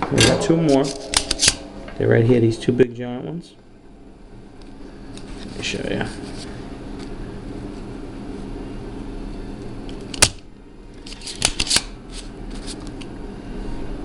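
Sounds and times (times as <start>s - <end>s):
sharp click: 0.0s - 2.0s
steady low hum: 0.0s - 14.0s.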